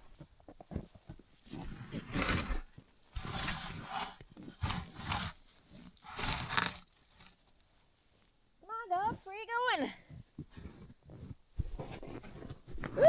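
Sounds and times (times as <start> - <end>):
footsteps crunching in dry snow: 3.1 - 7.5.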